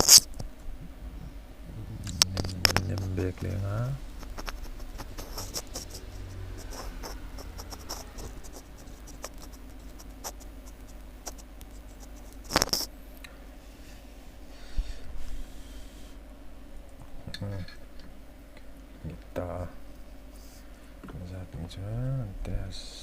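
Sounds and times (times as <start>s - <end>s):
hand tools scratching and clicking: 4.2s - 12.9s.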